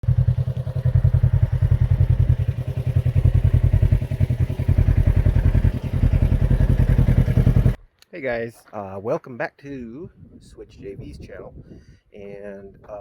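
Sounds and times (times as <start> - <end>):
engine idling: 0.0 - 7.8.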